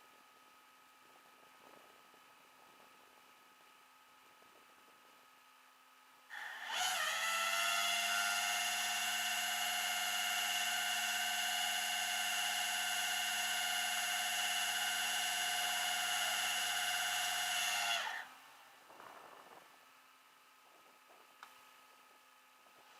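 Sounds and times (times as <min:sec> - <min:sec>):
electric motor whining: 0:06.3 - 0:18.4.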